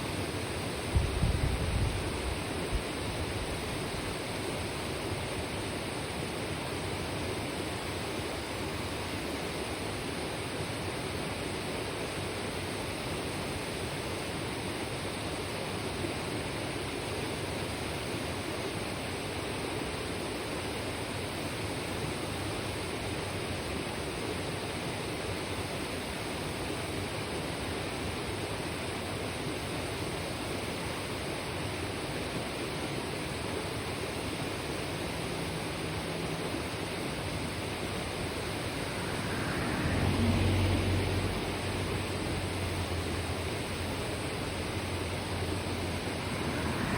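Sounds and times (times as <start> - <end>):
river babbling over rocks: 34.4 - 46.9
low hum: 37.1 - 46.9.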